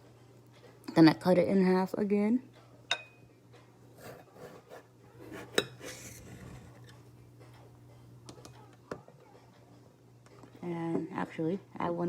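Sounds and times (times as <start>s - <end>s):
blade scraping a plate: 4.0s - 7.0s
knife cutting raw potato: 4.0s - 7.0s.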